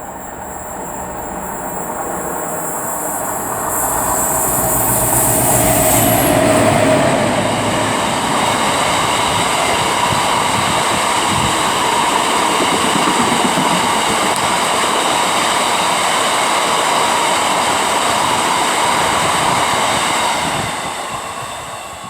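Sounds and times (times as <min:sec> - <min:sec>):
train wheels rumbling on rail: 0:00.0 - 0:22.0
high whining tones: 0:00.3 - 0:15.5.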